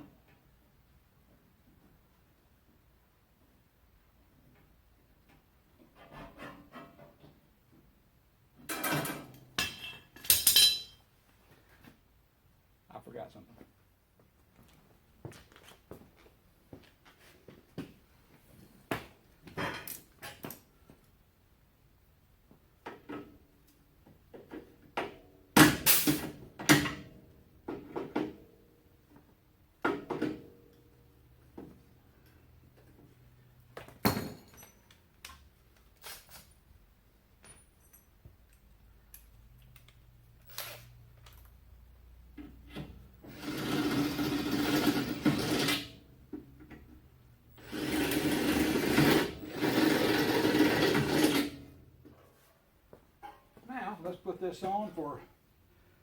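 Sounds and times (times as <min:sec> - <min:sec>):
parts knocking and clanking: 0:32.7 - 0:35.5.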